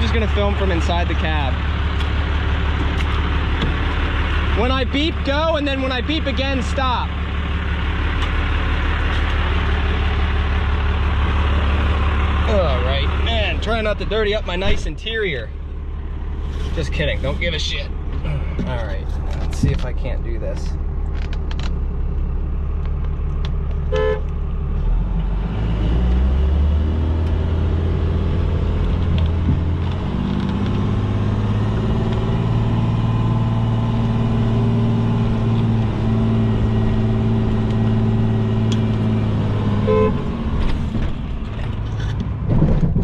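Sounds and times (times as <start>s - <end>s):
truck engine revving under load: 22.7s - 43.0s
truck horn beeping: 23.9s - 24.3s, 39.8s - 40.4s.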